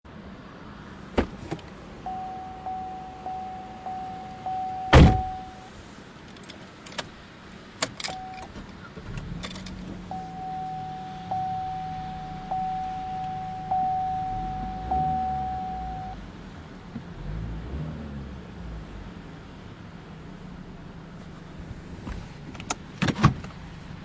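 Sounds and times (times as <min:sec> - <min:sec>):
car engine starting and idling: 0:00.1 - 0:24.0
car door shutting thump: 0:01.1 - 0:01.6, 0:04.8 - 0:05.5
car door clicks: 0:01.1 - 0:01.8, 0:03.9 - 0:05.6, 0:07.8 - 0:10.3, 0:22.1 - 0:23.6
car warning chime dinging: 0:02.0 - 0:05.7, 0:08.0 - 0:08.5, 0:10.1 - 0:16.2.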